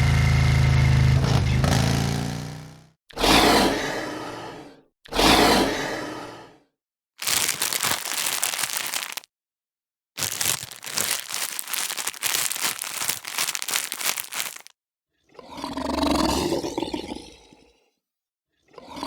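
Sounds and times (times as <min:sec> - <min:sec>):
loud animal roar: 0:03.1 - 0:06.6, 0:15.4 - 0:17.7
crinkling crackling sound: 0:07.2 - 0:09.3, 0:10.2 - 0:14.8.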